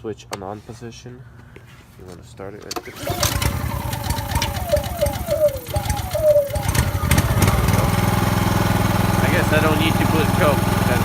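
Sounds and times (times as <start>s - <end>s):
generator engine starting up: 2.8s - 11.0s.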